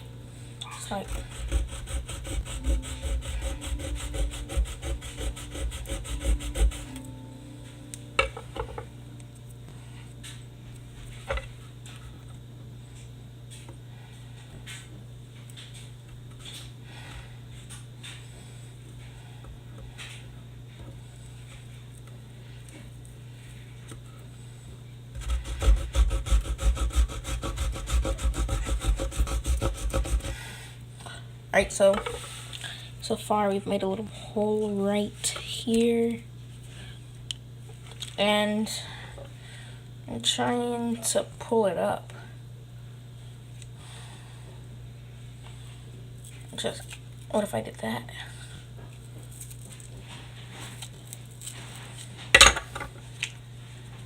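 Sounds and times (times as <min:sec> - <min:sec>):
low steady hum: 0:00.0 - 0:54.0
blade sawing at hard casing: 0:00.9 - 0:07.0, 0:25.2 - 0:30.4.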